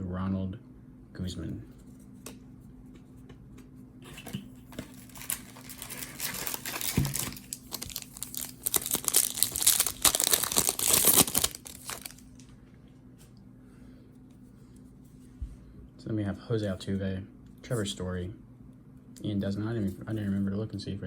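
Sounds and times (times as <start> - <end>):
wrapper tearing and crinkling: 4.7 - 12.4.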